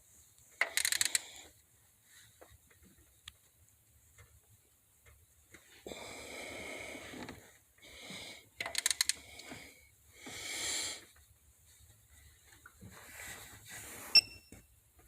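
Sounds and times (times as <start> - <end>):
ratchet clicks: 0.6 - 1.2, 8.6 - 9.2.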